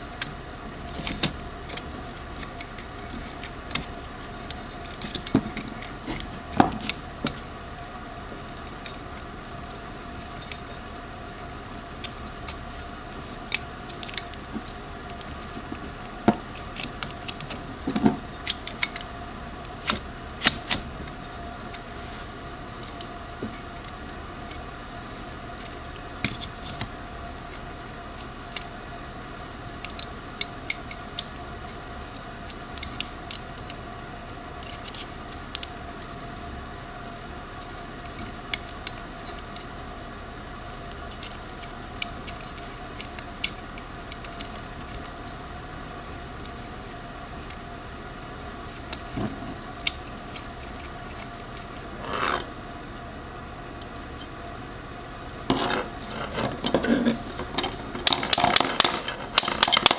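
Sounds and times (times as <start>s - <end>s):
steady background hum: 0.0s - 59.9s
clicks of tools being handled: 55.5s - 59.9s.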